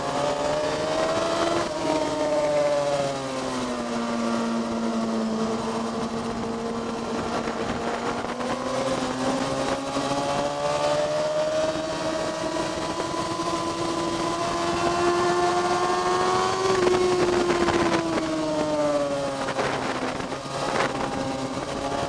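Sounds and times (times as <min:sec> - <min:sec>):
vehicle engine revving: 0:00.0 - 0:22.0
wind and road noise: 0:00.0 - 0:22.0.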